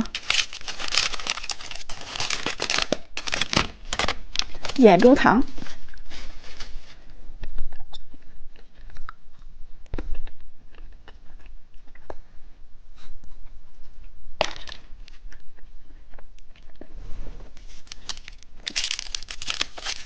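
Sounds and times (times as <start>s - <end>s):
plastic packaging crinkling: 0.0s - 7.0s, 17.7s - 20.0s.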